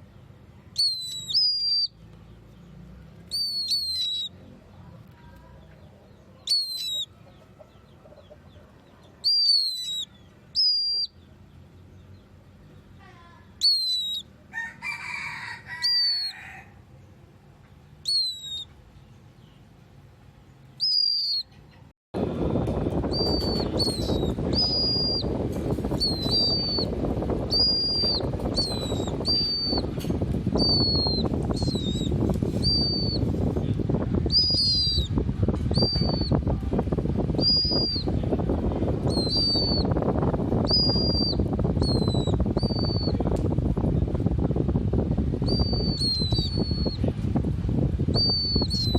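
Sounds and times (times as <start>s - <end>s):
pet bird chirping: 0.7s - 14.4s, 15.8s - 16.5s, 17.9s - 19.7s, 20.7s - 21.9s, 23.0s - 33.4s, 34.2s - 36.4s, 37.3s - 38.3s, 38.9s - 43.2s, 45.4s - 47.1s, 48.1s - 48.9s
steady rushing noise: 22.2s - 48.9s.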